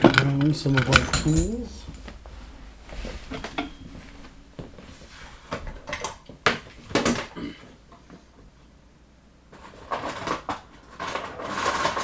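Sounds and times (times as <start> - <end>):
metal tools clicking and clinking: 0.0 - 3.9.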